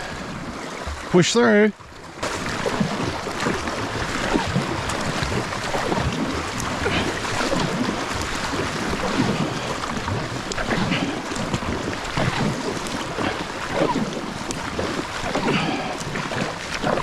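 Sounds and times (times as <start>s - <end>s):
river water rushing: 0.0s - 17.0s
small water splashes: 0.0s - 17.0s.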